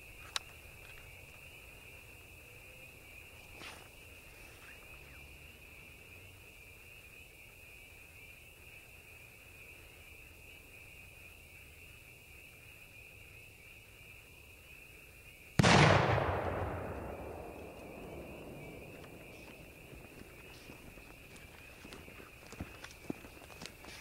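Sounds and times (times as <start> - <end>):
loud firework bang: 15.6 - 19.0
echo rolling away: 15.6 - 21.4.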